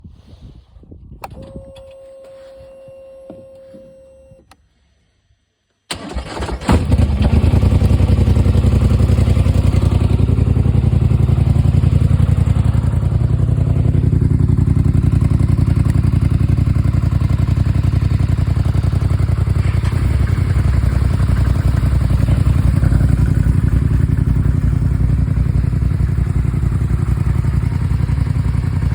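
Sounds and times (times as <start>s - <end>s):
atv engine starting and running: 5.9s - 28.9s.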